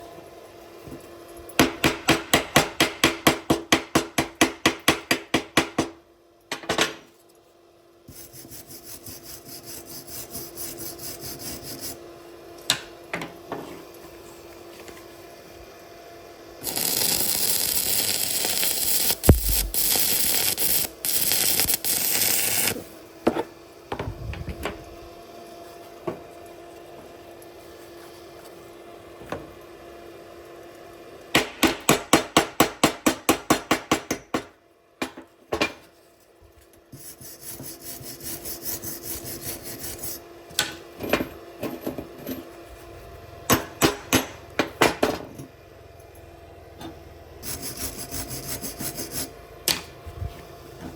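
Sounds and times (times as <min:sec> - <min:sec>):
rapid tool strokes: 0:08.1 - 0:12.0, 0:16.6 - 0:22.8, 0:36.9 - 0:40.2, 0:47.4 - 0:49.4
loud hissing crackle: 0:16.6 - 0:22.8.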